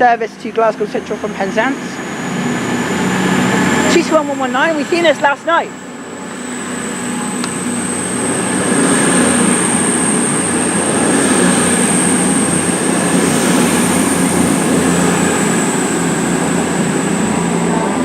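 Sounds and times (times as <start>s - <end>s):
diesel train engines running hard: 0.0s - 18.0s
thin high whine: 0.0s - 18.0s.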